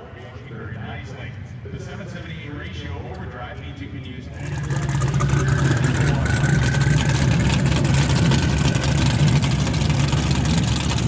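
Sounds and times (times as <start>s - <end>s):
car engine running at low revs: 4.3s - 11.0s.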